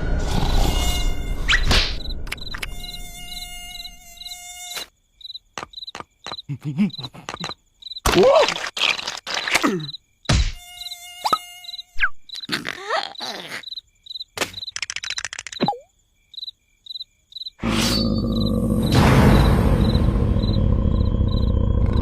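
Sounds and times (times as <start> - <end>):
pulsing insect-like buzz: 0.1 - 8.0, 8.6 - 22.0
squeaky cartoon voices: 12.4 - 13.8
loud hit: 18.8 - 20.8
loud noisy blast: 18.9 - 20.8.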